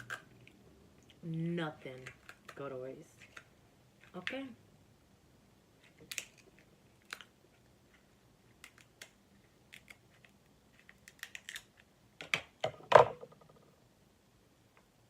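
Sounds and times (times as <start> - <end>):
crab shells clicking and snapping: 0.0 - 1.2, 1.9 - 2.6, 5.8 - 7.4, 8.5 - 12.4.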